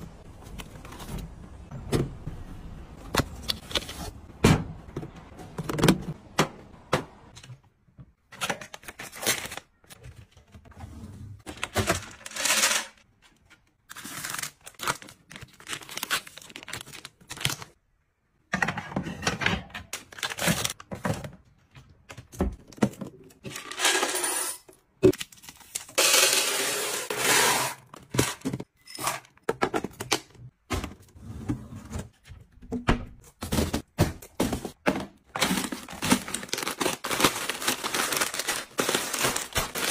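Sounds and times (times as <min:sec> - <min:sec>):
wrappers crinkling and tearing: 0:13.9 - 0:17.8, 0:35.4 - 0:39.9.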